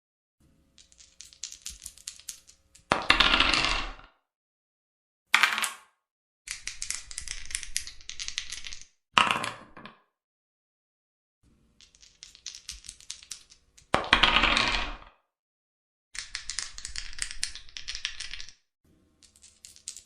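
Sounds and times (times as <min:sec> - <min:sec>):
dice clattering: 0:00.8 - 0:04.1, 0:05.4 - 0:05.8, 0:06.5 - 0:10.0, 0:11.8 - 0:15.1, 0:16.2 - 0:18.6, 0:19.2 - 0:20.0.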